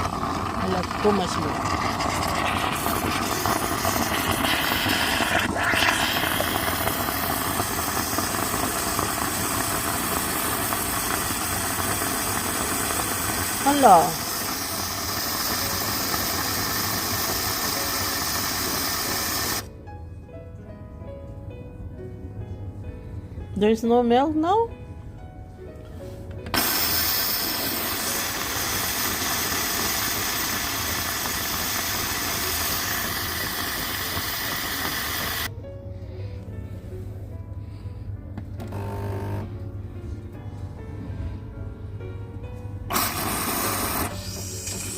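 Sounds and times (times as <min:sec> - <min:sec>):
espresso machine humming and hissing: 0:00.0 - 0:19.7, 0:26.5 - 0:35.5, 0:38.6 - 0:39.6, 0:42.9 - 0:44.9
soft piano-like music: 0:00.2 - 0:44.9.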